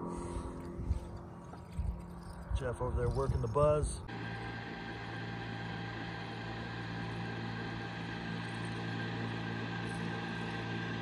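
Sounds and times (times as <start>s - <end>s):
steady motor hum: 0.0s - 11.0s.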